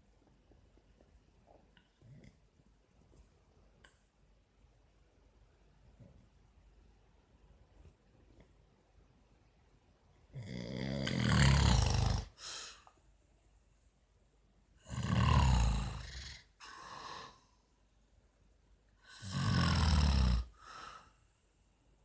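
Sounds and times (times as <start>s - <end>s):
man snoring: 10.4s - 12.5s, 14.8s - 17.4s, 19.0s - 20.8s
soft breath: 12.3s - 14.1s, 20.5s - 21.7s.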